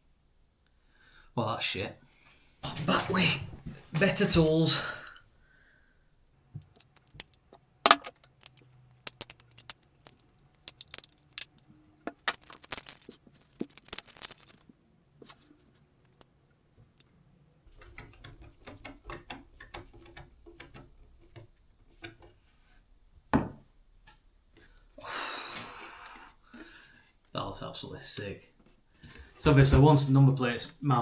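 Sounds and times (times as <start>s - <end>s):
small parts clicking and tapping: 6.6s - 17.4s.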